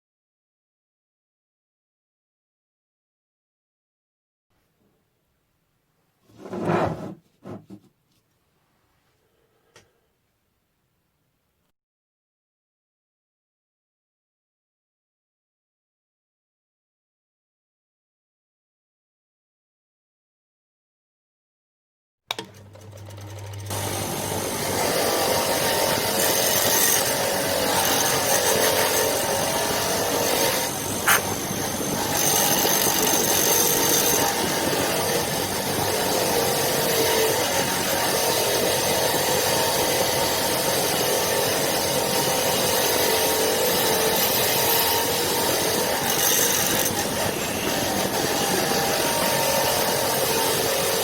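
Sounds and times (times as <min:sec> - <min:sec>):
power tool running under load: 0:22.3 - 0:51.0.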